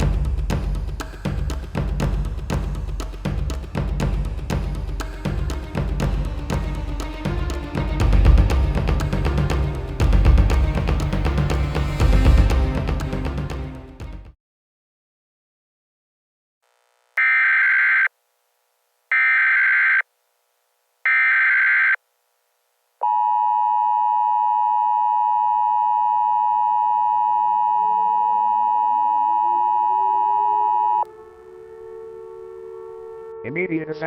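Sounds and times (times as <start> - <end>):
harsh data bursts: 17.2 - 18.1
faint siren winding up: 19.2 - 20.0, 24.4 - 31.5
two-tone attention signal: 23.0 - 31.1.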